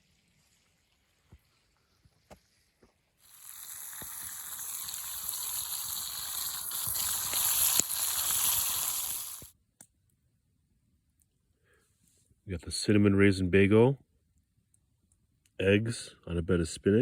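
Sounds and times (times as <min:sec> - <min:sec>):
food sizzling in a pan: 0:00.0 - 0:09.5
pops: 0:03.2 - 0:09.5.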